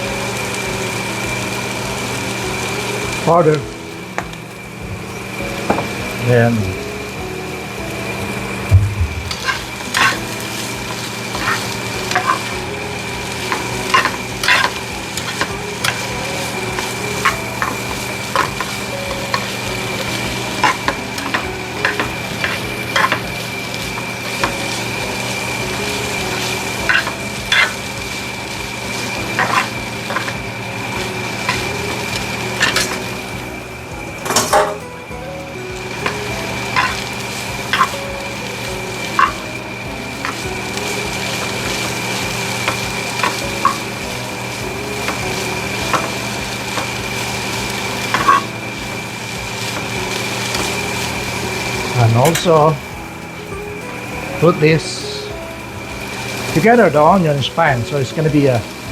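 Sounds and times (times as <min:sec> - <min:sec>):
chicken sizzling in a frying pan: 0:00.0 - 0:58.9
utensil scraping a pan: 0:09.2 - 0:28.0, 0:28.9 - 0:30.4, 0:36.0 - 0:39.6, 0:40.2 - 0:48.6.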